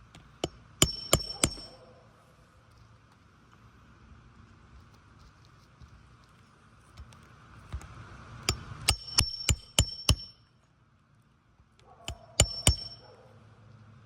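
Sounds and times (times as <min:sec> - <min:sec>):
hammer striking nails: 0:00.4 - 0:01.8, 0:08.5 - 0:10.4, 0:12.1 - 0:13.0.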